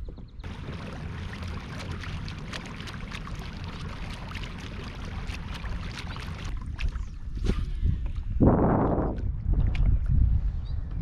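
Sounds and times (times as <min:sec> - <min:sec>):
water drips: 0:00.4 - 0:07.1
water splashing around kayak: 0:00.4 - 0:10.6
steady low rumble: 0:00.4 - 0:11.0.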